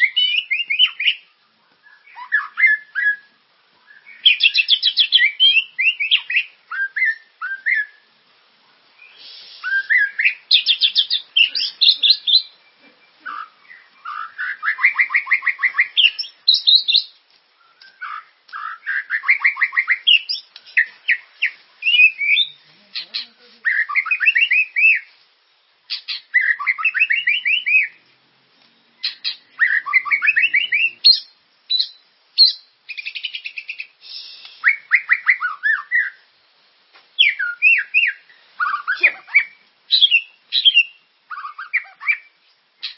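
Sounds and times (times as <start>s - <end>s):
songbird singing trills and whistles: 0.0s - 8.1s, 9.0s - 25.2s, 25.9s - 28.0s, 28.8s - 36.3s, 37.2s - 42.9s.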